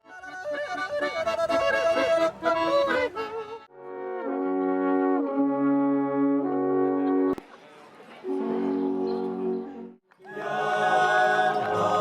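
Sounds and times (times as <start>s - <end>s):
fast folk tune: 0.0s - 7.4s
alphorns long held notes: 0.1s - 7.4s.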